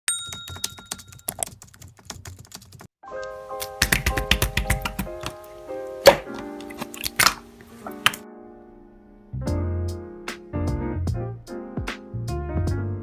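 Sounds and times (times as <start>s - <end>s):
background music with sustained notes: 3.0s - 13.0s.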